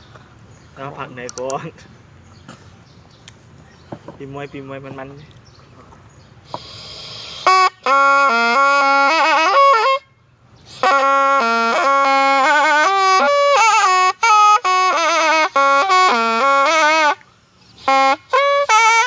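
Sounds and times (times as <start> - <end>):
reed wind instrument melody: 6.5 - 19.0.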